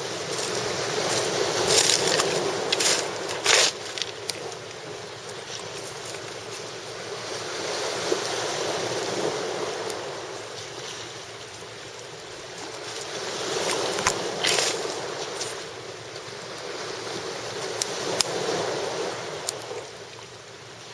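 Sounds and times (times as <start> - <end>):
sea waves washing onto shore: 0.0 - 20.9.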